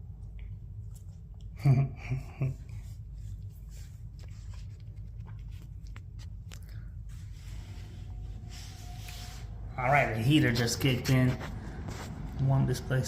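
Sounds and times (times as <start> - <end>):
steady low hum: 0.0 - 13.0
cat chewing and licking: 3.1 - 6.9.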